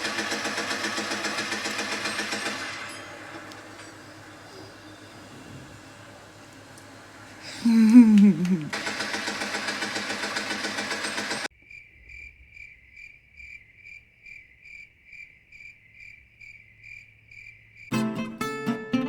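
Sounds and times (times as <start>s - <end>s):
cricket chirping: 11.5s - 17.9s.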